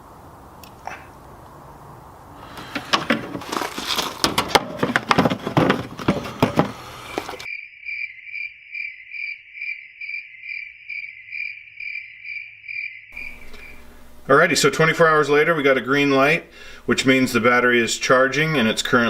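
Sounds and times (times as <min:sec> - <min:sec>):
clattering and crackling: 0:02.5 - 0:07.5
cricket chirping: 0:07.2 - 0:14.0.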